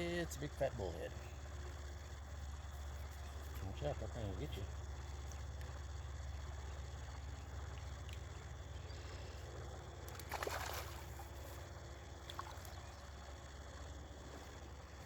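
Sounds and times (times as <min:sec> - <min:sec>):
splash in pond water: 0:10.1 - 0:11.6, 0:12.2 - 0:13.0.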